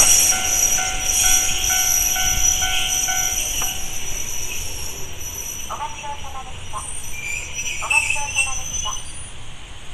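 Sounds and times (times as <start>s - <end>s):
electronic crossing warning bell: 0.0s - 4.2s
train going by: 0.0s - 9.9s.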